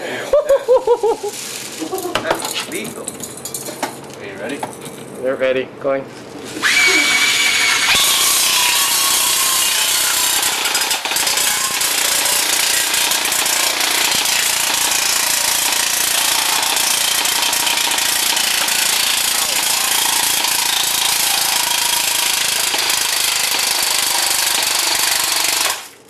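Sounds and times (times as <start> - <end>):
airsoft gun firing full-auto: 7.9 - 25.9.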